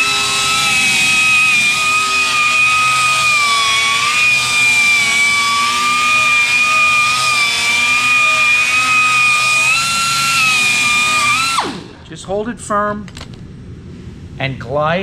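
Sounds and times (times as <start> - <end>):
power tool polishing metal whine: 0.0 - 11.9.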